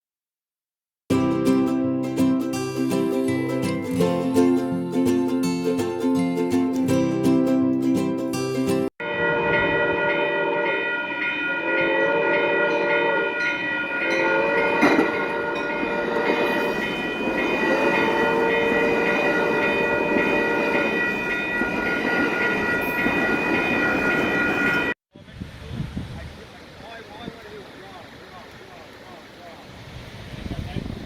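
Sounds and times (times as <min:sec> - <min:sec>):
train horn blasts: 0:09.0 - 0:21.8
steady high-pitched tones: 0:09.1 - 0:25.0
train cars rumbling: 0:09.1 - 0:25.0.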